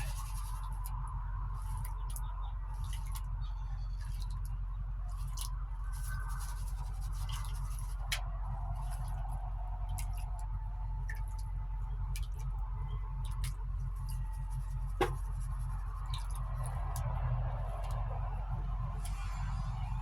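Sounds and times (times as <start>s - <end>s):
gravel scraping in a gold pan: 0.0s - 2.1s, 5.1s - 10.4s
steady low hum: 0.0s - 20.0s.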